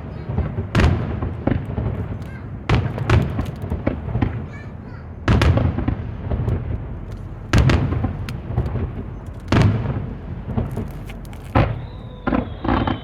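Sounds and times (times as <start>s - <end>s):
fireworks crackle: 0.0s - 13.0s
fireworks shells booming: 0.0s - 13.0s
high falling whistle: 11.7s - 13.0s.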